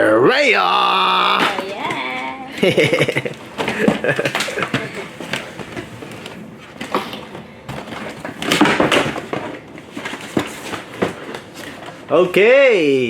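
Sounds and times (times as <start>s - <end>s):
cardboard and plastic crinkling: 1.2s - 12.4s
plastic pieces snapping: 3.0s - 11.6s.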